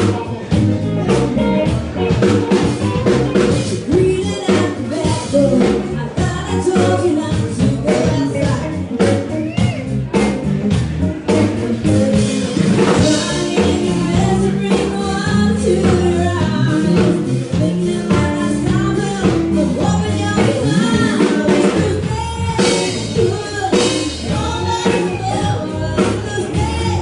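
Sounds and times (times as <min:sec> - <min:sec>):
person singing: 0:00.0 - 0:10.4, 0:11.0 - 0:27.0
band playing a song: 0:00.0 - 0:27.0.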